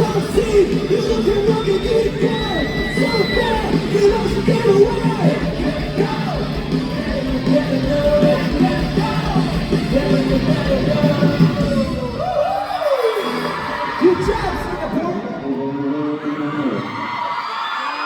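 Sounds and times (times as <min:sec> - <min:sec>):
bass guitar: 0:00.0 - 0:12.3
drums: 0:00.0 - 0:15.6
distorted electric guitars: 0:00.0 - 0:15.7
loud sung vocals: 0:00.0 - 0:18.0.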